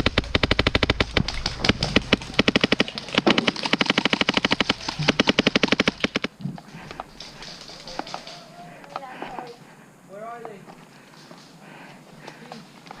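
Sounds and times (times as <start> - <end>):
airsoft guns firing full auto: 0.0 - 6.3.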